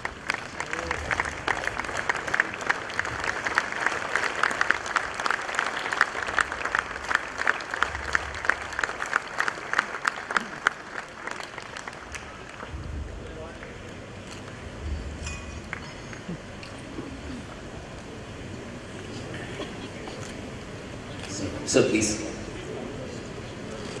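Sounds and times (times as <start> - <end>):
audience applauding: 0.0 - 13.8.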